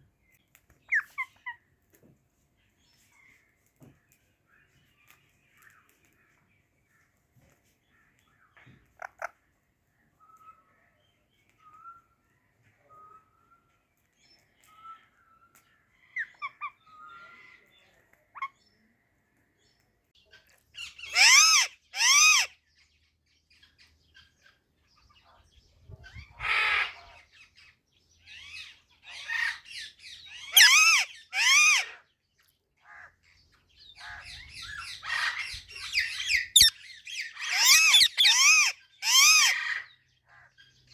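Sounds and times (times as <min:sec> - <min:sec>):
parakeets chattering: 0:21.0 - 0:22.5, 0:30.4 - 0:31.9, 0:34.0 - 0:39.8
parakeets squawking: 0:21.1 - 0:22.5, 0:30.4 - 0:31.9, 0:34.0 - 0:39.8.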